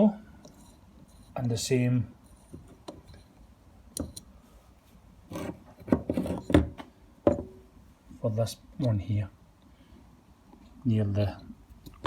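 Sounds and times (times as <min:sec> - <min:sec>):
knocks and scrapes on workbench: 0:05.3 - 0:07.6.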